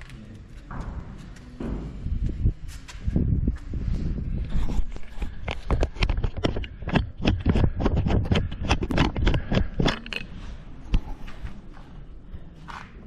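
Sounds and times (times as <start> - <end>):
sharp clicks and knocks: 4.8 - 11.1.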